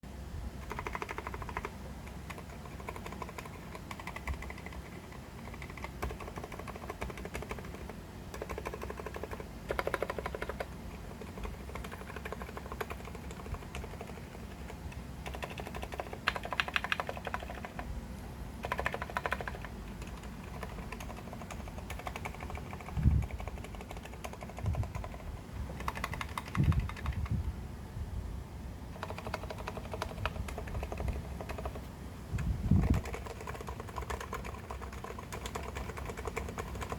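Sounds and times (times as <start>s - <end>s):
keyboard typing: 0.6s - 17.9s, 18.6s - 27.4s, 28.9s - 36.9s.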